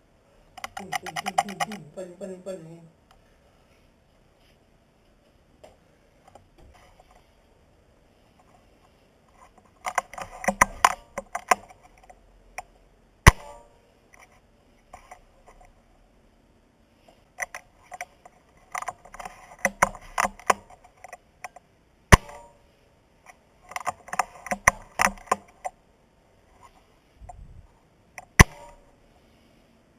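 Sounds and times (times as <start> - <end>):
rifle clicks and rattles: 0.5 - 1.8, 9.4 - 12.7, 17.4 - 21.7, 23.3 - 25.8.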